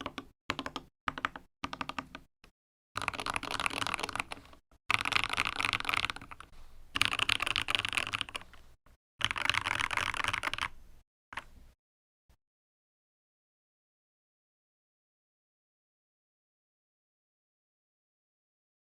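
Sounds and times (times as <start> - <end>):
fast mechanical keyboard typing: 0.0 - 2.2, 3.0 - 8.5, 9.2 - 10.7.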